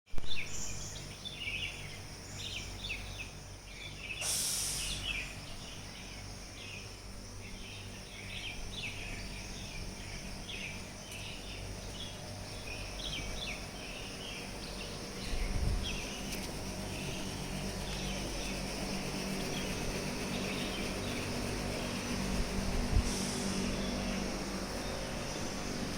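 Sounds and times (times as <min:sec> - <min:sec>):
birds chirping: 0:00.2 - 0:25.8
brief hiss: 0:04.2 - 0:05.3, 0:22.6 - 0:24.2
steady low rumble: 0:05.1 - 0:25.9.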